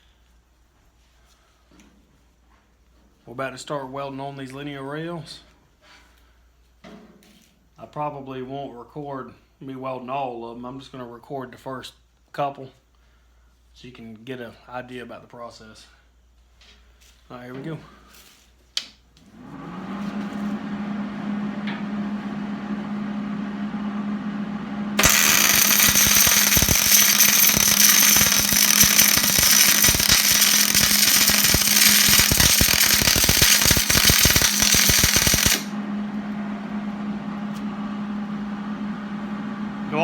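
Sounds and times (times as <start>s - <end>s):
welding arc crackling: 25.0s - 35.7s
welding machine hum: 25.0s - 36.3s.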